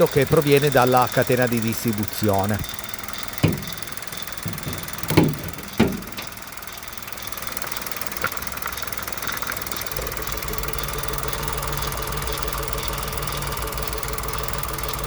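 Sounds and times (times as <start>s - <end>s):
car engine idling: 0.0s - 15.0s
metallic rattle: 0.0s - 15.0s
sharp knocks: 3.4s - 6.4s.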